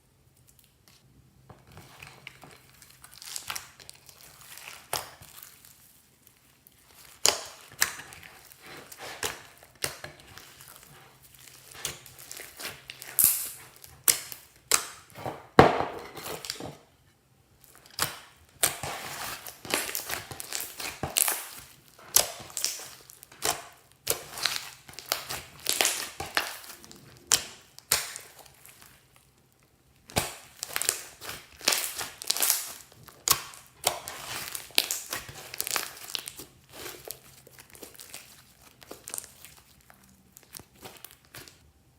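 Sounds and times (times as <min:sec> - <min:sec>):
slime crackling pops: 0:30.1 - 0:36.9.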